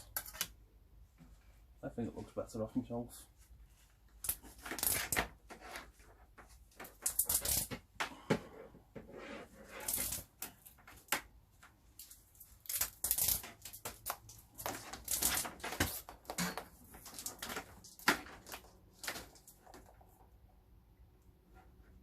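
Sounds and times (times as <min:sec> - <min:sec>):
cable and tools clicking and rustling: 0:04.2 - 0:08.4, 0:09.8 - 0:20.4.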